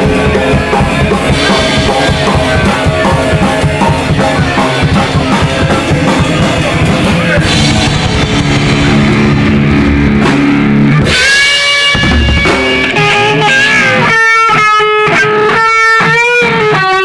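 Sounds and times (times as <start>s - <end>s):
rapid drum hits: 0.0s - 14.0s
rock band playing: 0.0s - 17.0s
sustained electric guitar note: 6.6s - 14.1s.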